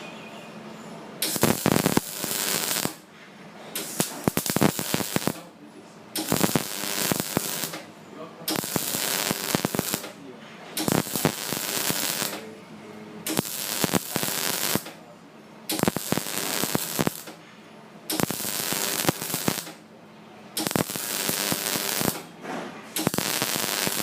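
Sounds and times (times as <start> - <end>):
welding arc crackling: 1.2 - 3.0, 3.8 - 5.5, 6.2 - 7.9, 8.5 - 10.2, 10.8 - 12.4, 13.3 - 15.0, 15.7 - 17.4, 18.1 - 19.8, 20.6 - 22.4, 23.0 - 24.0.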